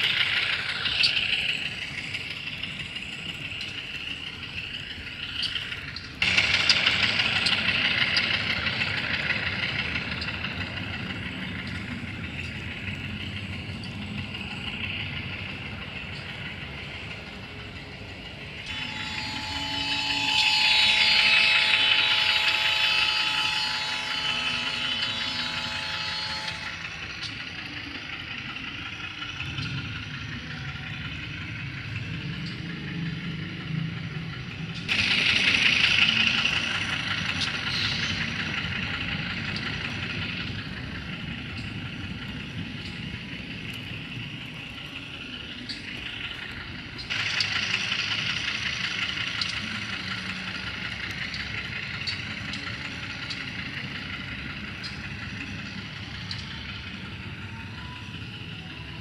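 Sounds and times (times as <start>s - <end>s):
diesel locomotive engine running: 0.0s - 59.0s
pitched tone: 18.7s - 27.0s
hiss: 34.4s - 59.0s.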